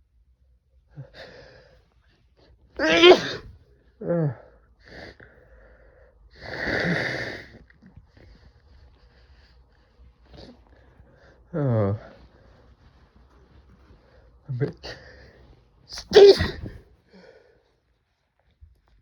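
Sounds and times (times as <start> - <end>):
man sneezing: 2.8 - 3.5, 15.9 - 16.8.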